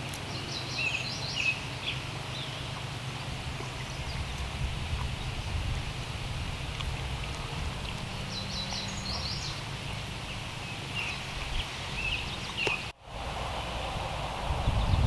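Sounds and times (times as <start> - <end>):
small birds chirping: 0.0 - 12.9
wind rumble on microphone: 3.3 - 15.0.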